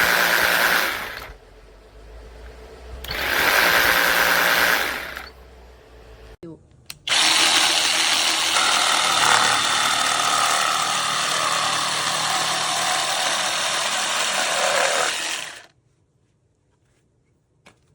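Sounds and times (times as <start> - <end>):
cordless jigsaw buzzing: 0.0 - 1.4, 3.0 - 5.4, 7.1 - 15.7.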